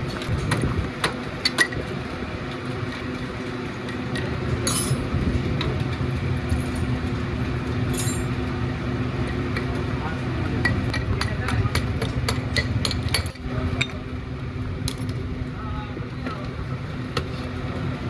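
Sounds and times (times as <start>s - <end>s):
steady mechanical hum: 0.0s - 18.0s
metallic clinks of tools: 4.6s - 5.1s, 7.9s - 8.4s.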